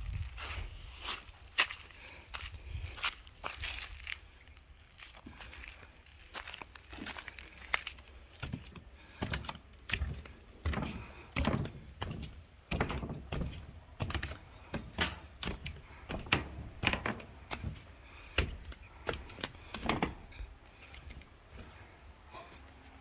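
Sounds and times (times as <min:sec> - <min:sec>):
footsteps on plastic slatted floor: 0:06.4 - 0:23.0.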